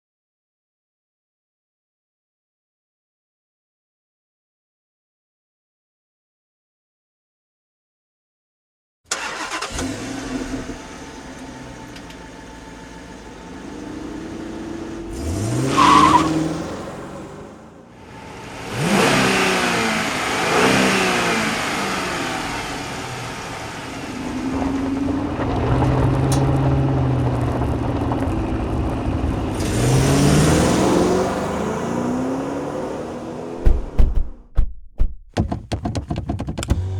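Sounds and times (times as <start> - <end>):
car engine revving: 9.1 - 34.5, 35.4 - 36.9.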